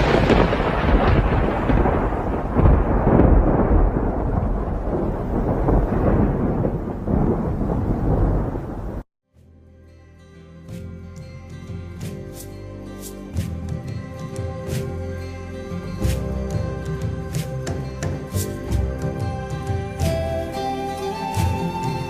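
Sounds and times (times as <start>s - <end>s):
rolling thunder rumble: 0.0s - 9.0s.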